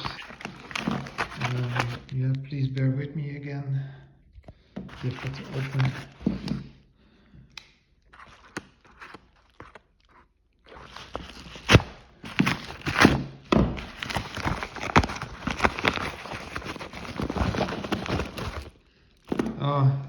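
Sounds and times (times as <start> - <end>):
packaging clicks and taps: 0.0 - 2.2, 7.6 - 10.2, 13.8 - 19.6
packaging rustling and crinkling: 0.0 - 2.3, 4.9 - 6.6, 8.1 - 19.6.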